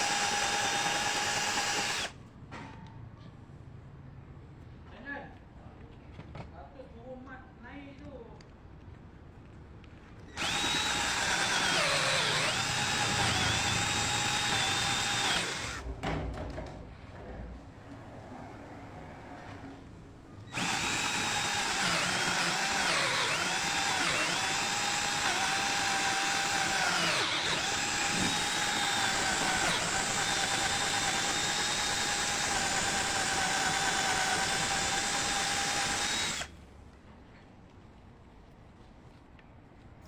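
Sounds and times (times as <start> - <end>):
cordless drill whining: 0.0 - 2.2, 10.3 - 15.8, 20.5 - 36.5.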